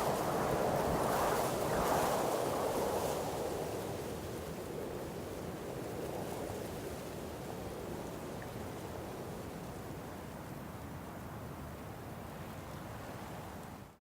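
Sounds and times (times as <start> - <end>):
wind rushing through trees: 0.0 - 6.4.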